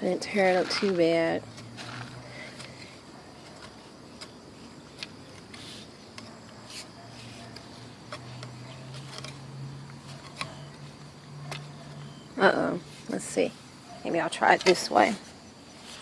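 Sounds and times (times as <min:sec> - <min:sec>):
hand digging in loose soil: 0:15.8 - 0:16.0.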